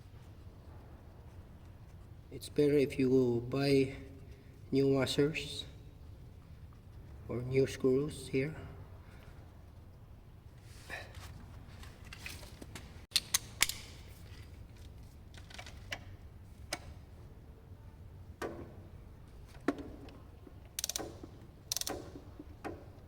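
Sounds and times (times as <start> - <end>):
metallic clicks of hand tools: 13.1 - 14.0, 20.7 - 22.3
ratchet clicking: 20.8 - 22.2.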